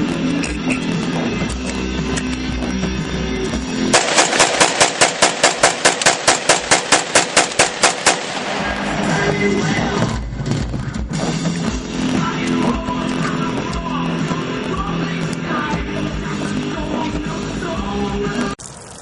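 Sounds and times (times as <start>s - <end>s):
guitar music: 0.0s - 4.0s, 8.5s - 18.6s
rifle fired rapidly: 3.9s - 9.0s.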